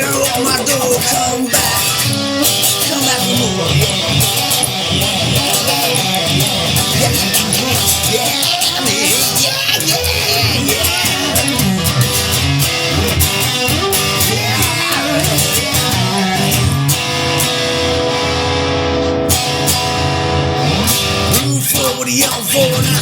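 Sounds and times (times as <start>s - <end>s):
rock guitar playing: 0.0s - 23.0s.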